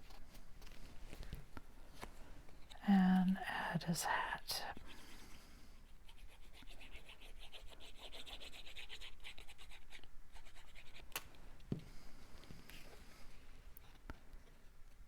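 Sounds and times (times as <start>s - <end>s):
scratchy rubbing on cardstock: 5.8s - 11.2s.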